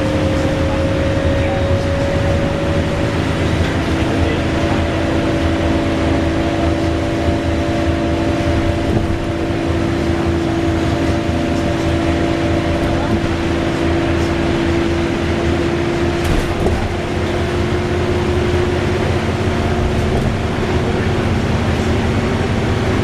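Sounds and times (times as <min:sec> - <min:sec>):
bus engine rumble: 0:00.0 - 0:23.0
bus whirring whine: 0:00.0 - 0:23.0
road noise: 0:00.0 - 0:23.0.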